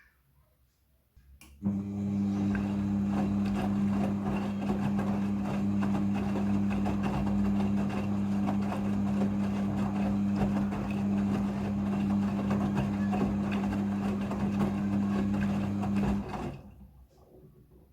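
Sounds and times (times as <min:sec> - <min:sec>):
washing machine hum: 0:01.6 - 0:17.6.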